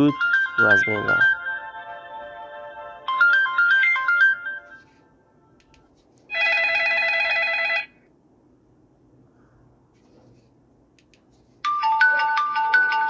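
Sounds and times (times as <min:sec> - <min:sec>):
phone ringtone melody: 0:00.0 - 0:05.6, 0:06.3 - 0:08.0, 0:11.6 - 0:13.0
warbling phone ring tone: 0:00.1 - 0:04.8, 0:06.3 - 0:08.0.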